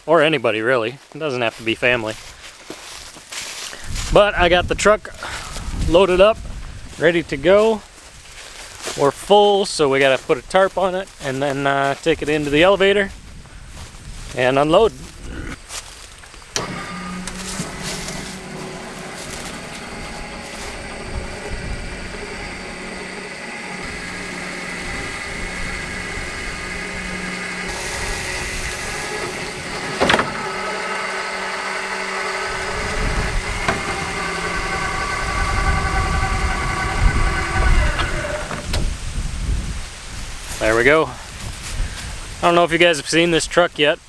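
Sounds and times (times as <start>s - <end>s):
truck engine starting and idling: 14.4s - 39.4s.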